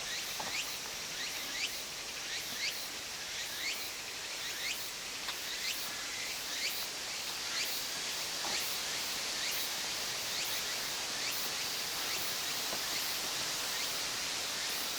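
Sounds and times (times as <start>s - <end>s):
steady outdoor hiss: 0.0s - 14.9s.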